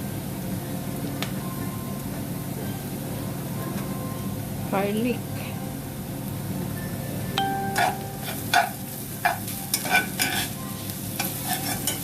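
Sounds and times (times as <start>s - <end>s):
utensil striking pan ring: 7.4s - 10.5s
garlic sizzling in hot oil: 7.8s - 12.0s
metal utensil scraping a pan: 8.2s - 10.6s, 11.2s - 12.0s.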